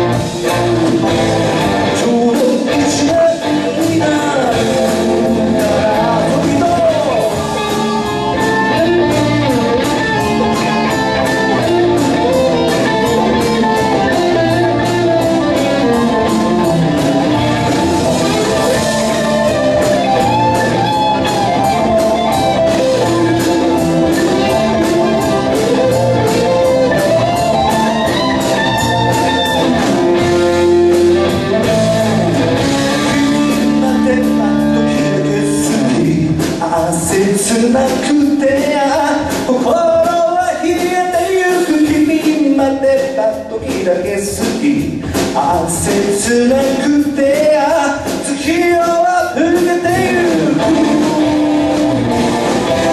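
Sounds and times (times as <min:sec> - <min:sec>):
electric guitar bending notes: 0:00.0 - 0:02.8, 0:03.4 - 0:36.0, 0:49.8 - 0:52.9
rock band playing: 0:00.0 - 0:52.9.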